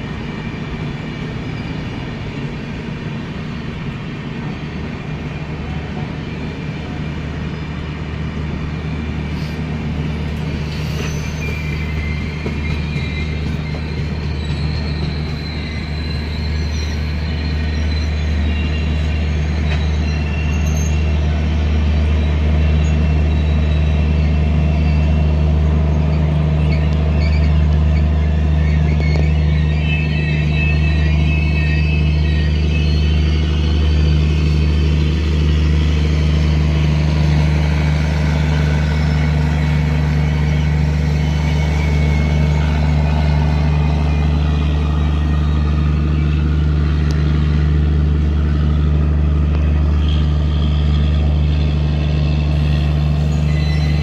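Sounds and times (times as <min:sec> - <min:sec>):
train rumbling along track: 0:00.0 - 0:54.0
faint high squeals: 0:10.2 - 0:47.8, 0:49.6 - 0:54.0.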